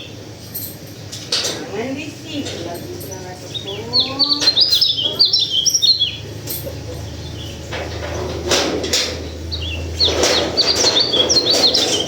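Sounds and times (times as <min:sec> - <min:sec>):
bird chirping: 0:03.0 - 0:08.4, 0:09.1 - 0:12.0.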